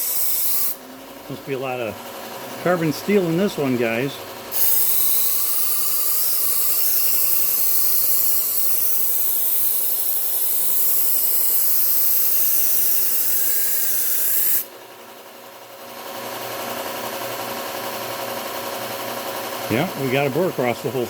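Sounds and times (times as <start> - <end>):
belt sander grinding steel blade: 0.0 - 1.9, 2.6 - 14.7.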